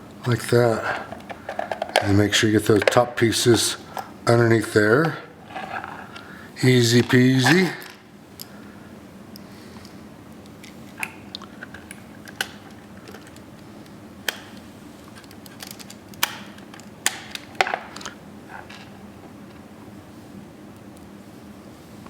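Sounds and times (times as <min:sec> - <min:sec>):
plastic parts clicking together: 0:14.3 - 0:18.2.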